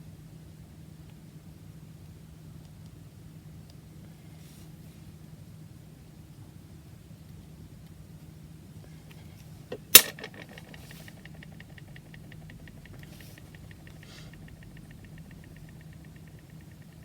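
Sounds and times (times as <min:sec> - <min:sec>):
fast even ticking: 0:09.7 - 0:17.0
sharp click: 0:09.7 - 0:17.0.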